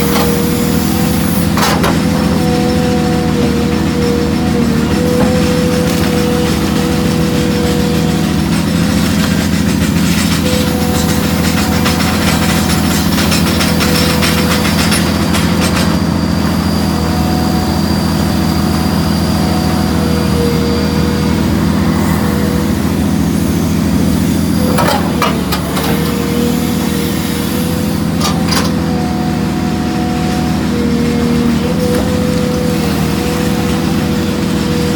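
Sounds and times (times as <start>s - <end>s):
diesel machinery drone: 0.0s - 34.9s
stones rattling through crusher: 5.2s - 16.1s.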